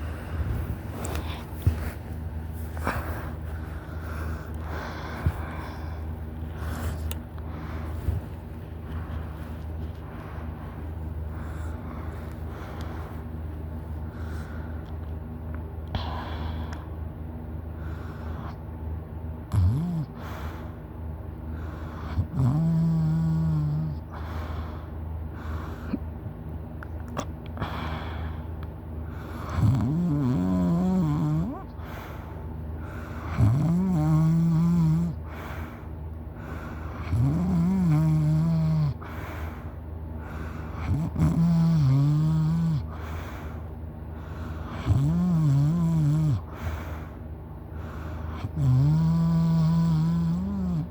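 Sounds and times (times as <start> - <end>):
person snoring loudly: 19.5 - 20.2, 22.1 - 24.0, 29.5 - 31.6, 33.3 - 35.2, 37.0 - 39.0, 40.8 - 42.9, 44.7 - 46.6, 48.4 - 50.9.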